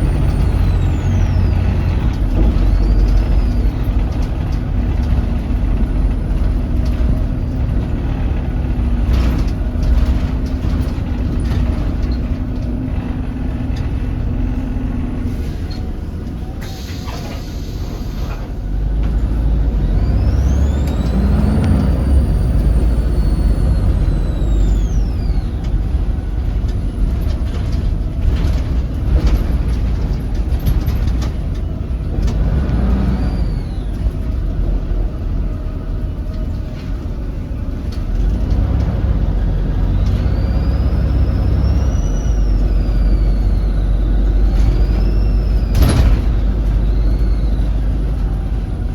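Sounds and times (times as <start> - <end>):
bus diesel engine running: 0.0 - 48.9
air hiss: 16.6 - 18.3
turbo whistle: 39.8 - 48.0.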